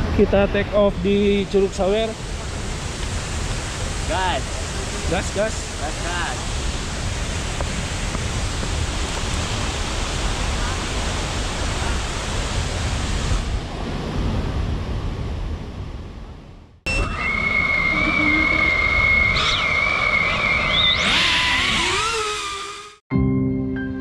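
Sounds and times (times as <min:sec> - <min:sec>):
waterfall roaring: 0:00.8 - 0:13.5
drone motors whining: 0:16.9 - 0:23.0.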